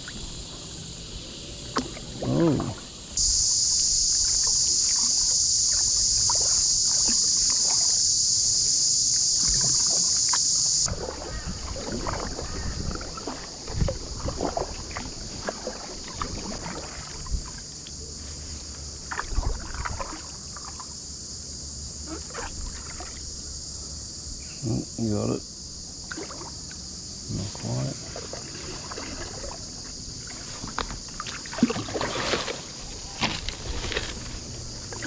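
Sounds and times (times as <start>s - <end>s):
cicada buzz: 0.0s - 35.0s
paddle strokes in water: 4.0s - 8.0s, 9.4s - 20.9s, 22.2s - 23.3s, 26.1s - 26.8s, 27.5s - 35.0s.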